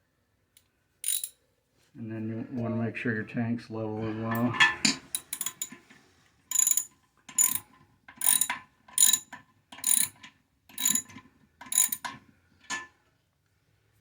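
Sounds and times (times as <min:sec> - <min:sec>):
socket ratchet clicking: 0:01.0 - 0:01.4, 0:05.1 - 0:05.8, 0:06.5 - 0:07.6, 0:08.2 - 0:12.1.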